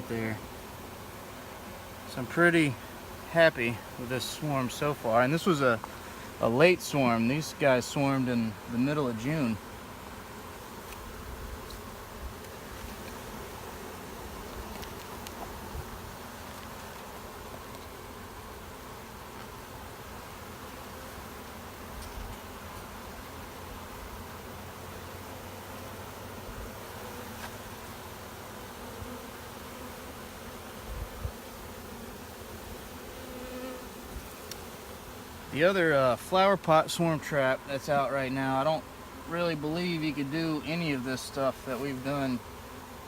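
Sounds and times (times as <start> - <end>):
bees buzzing: 0.0 - 43.0.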